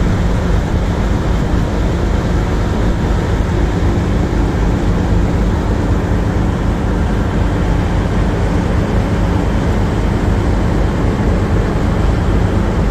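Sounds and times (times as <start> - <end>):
diesel engine low drone: 0.0 - 12.9.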